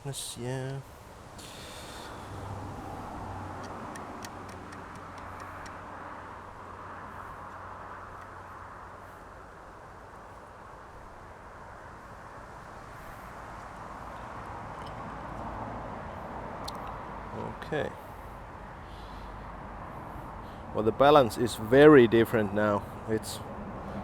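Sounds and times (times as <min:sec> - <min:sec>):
faint clicks: 0:03.6 - 0:05.8.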